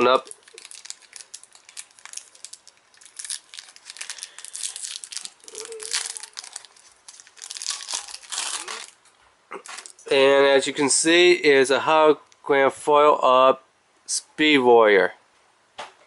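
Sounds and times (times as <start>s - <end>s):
packaging crinkling and tearing: 0.0s - 9.0s, 9.6s - 10.1s.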